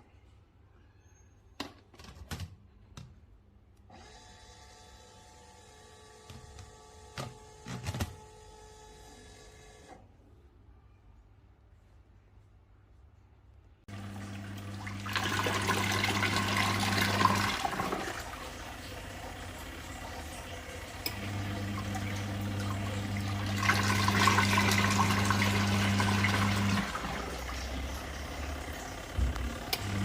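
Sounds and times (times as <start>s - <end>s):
washing machine motor humming: 13.9s - 30.0s.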